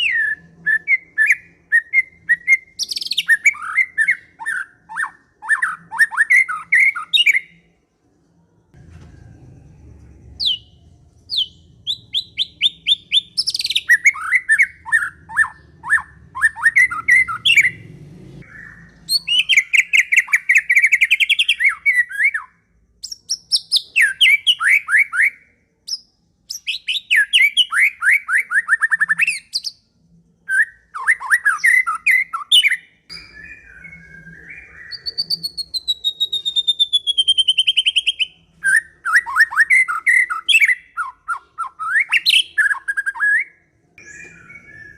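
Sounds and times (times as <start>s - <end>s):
songbird trilling: 10.2s - 17.8s, 18.4s - 29.8s, 30.5s - 44.9s.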